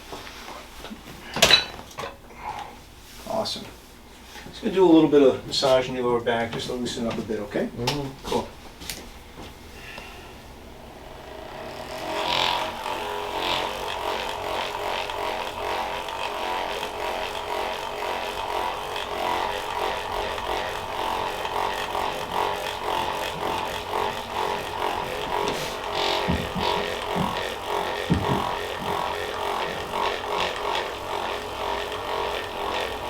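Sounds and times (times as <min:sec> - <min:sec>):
electric massager motor pulsing: 0:09.2 - 0:33.0.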